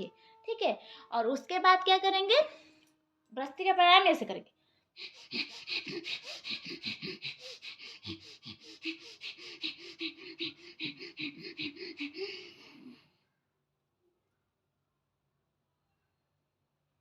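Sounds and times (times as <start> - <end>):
rapid forceful nose breathing: 5.0 - 13.1.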